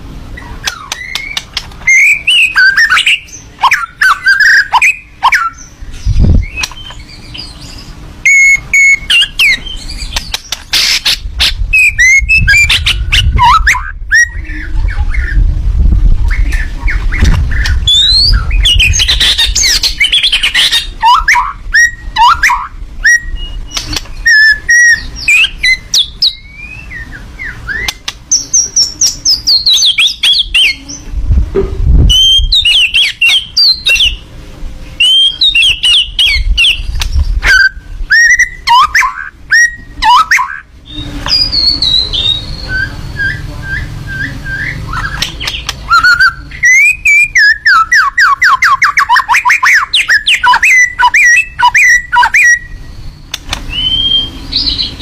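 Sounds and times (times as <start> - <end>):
songbird singing: 0.1 - 31.2, 31.9 - 55.0
low rumble: 11.3 - 20.0.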